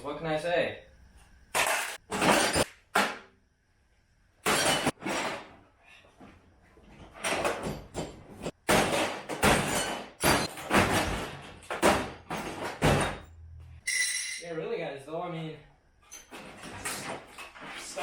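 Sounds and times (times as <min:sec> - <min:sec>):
microwave being smashed: 0:01.5 - 0:03.3, 0:04.4 - 0:05.5, 0:07.3 - 0:13.2.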